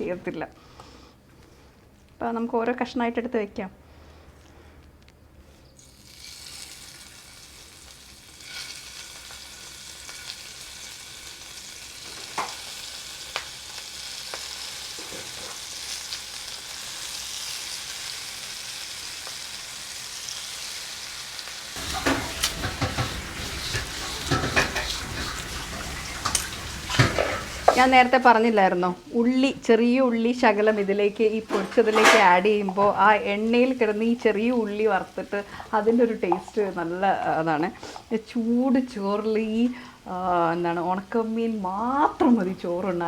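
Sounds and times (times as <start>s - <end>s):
fish sizzling in oil: 5.8s - 28.2s, 33.4s - 37.0s
utensil scraping in pan: 6.0s - 11.0s, 21.7s - 28.1s
oil popping: 21.8s - 28.0s, 36.2s - 36.7s.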